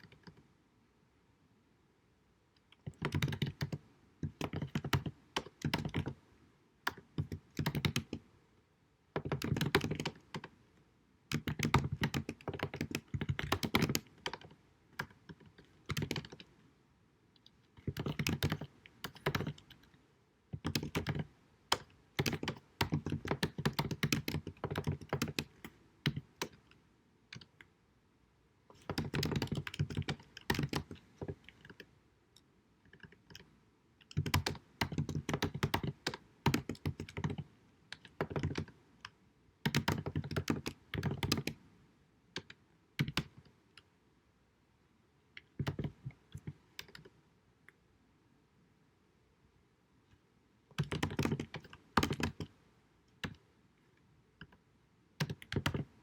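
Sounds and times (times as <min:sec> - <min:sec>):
typing on computer keyboard: 0:02.7 - 0:06.2, 0:06.8 - 0:08.2, 0:09.2 - 0:10.5, 0:11.3 - 0:16.5, 0:17.8 - 0:19.9, 0:20.5 - 0:27.7, 0:28.7 - 0:31.9, 0:32.8 - 0:41.6, 0:42.4 - 0:43.5, 0:45.4 - 0:47.1, 0:50.7 - 0:52.6, 0:53.2 - 0:53.4, 0:55.2 - 0:56.0.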